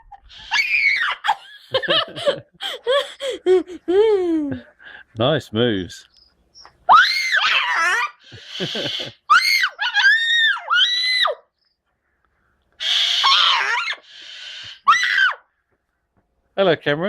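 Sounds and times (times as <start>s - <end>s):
parrot harsh hissing screeches: 0.3s - 1.2s, 12.8s - 15.2s
high-pitched screams: 0.3s - 1.4s, 6.8s - 11.5s, 12.8s - 15.5s.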